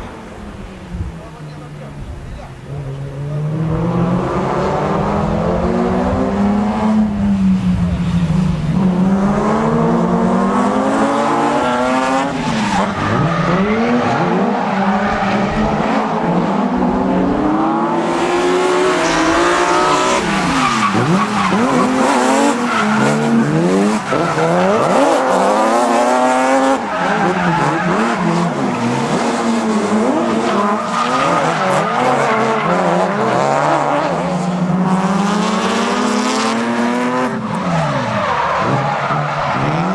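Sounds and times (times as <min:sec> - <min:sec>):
car engines revving hard: 0:00.0 - 0:39.9
tyres squealing: 0:12.2 - 0:18.0, 0:18.9 - 0:33.4.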